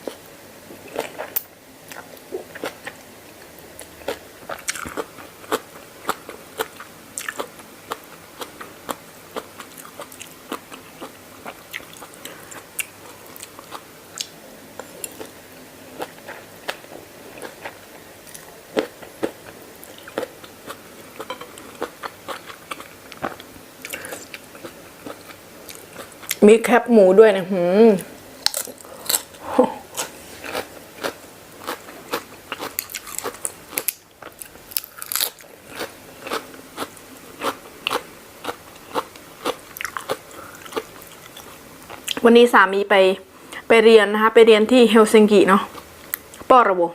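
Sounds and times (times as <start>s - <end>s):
crunchy chewing: 3.8s - 26.4s, 28.4s - 42.2s.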